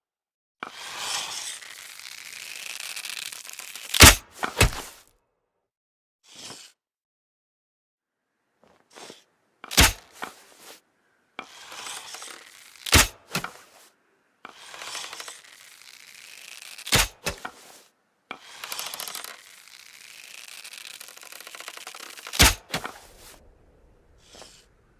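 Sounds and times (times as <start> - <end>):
bow creaking draw: 0.6 - 5.1, 6.3 - 6.8, 8.6 - 24.9
arrow knock: 22.4 - 23.4.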